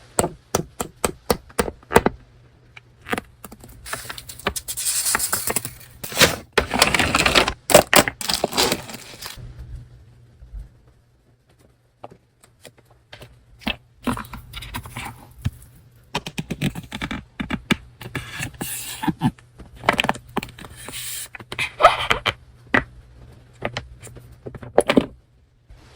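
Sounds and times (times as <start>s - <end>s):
paper crinkling: 3.5s - 9.4s
paper scraping and rustling: 3.6s - 7.6s, 8.2s - 9.4s.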